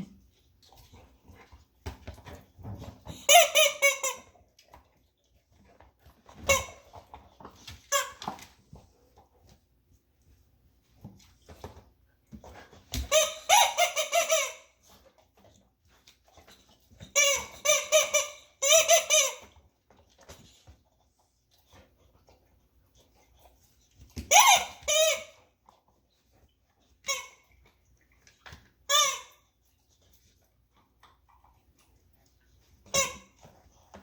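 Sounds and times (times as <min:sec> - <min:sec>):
rubber chicken toy squeaking: 0:13.1 - 0:14.6, 0:17.1 - 0:19.4, 0:24.3 - 0:25.3, 0:28.9 - 0:29.3.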